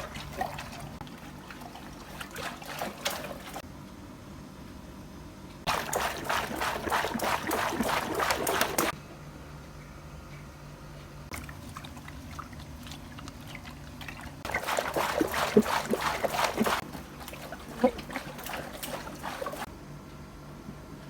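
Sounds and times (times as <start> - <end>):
splashing and knocks: 0.0 - 3.6, 5.7 - 9.0, 11.3 - 19.7
water trickling and sloshing: 0.0 - 3.7, 5.6 - 9.0, 11.3 - 19.7.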